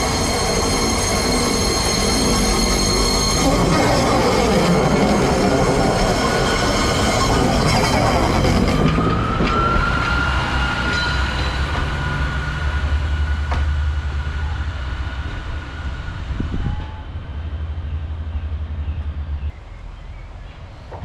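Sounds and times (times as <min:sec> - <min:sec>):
high wheel squeal: 0:00.0 - 0:13.4
diesel railbus engine drone: 0:00.0 - 0:21.0.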